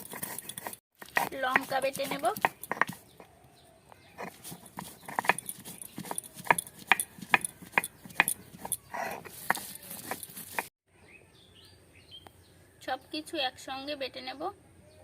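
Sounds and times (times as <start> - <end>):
stone grinding on stone: 0.0 - 3.3, 4.2 - 10.7.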